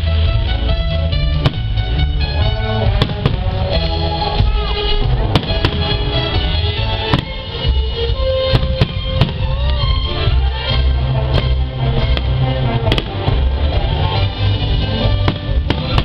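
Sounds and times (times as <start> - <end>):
loud instrumental music: 0.0 - 16.0
firework bangs: 1.4 - 2.0, 2.8 - 3.8, 5.2 - 6.4, 7.0 - 7.7, 8.5 - 9.6, 11.3 - 13.5, 15.1 - 16.0.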